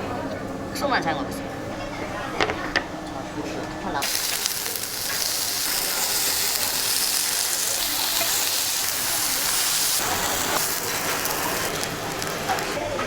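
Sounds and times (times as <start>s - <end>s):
beef sizzling on grill: 4.0s - 13.0s.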